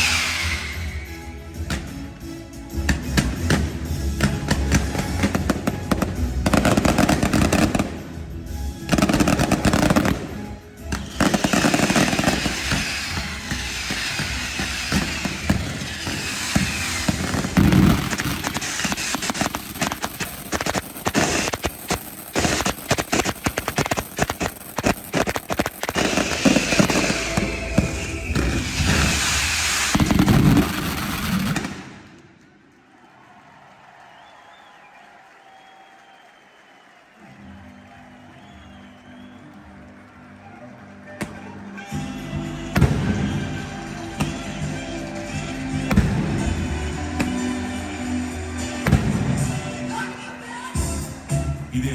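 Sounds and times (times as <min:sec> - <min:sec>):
loud music: 0:00.0 - 0:25.2, 0:25.8 - 0:31.8, 0:41.2 - 0:51.9
fireworks bursting: 0:00.0 - 0:32.6, 0:41.2 - 0:51.3.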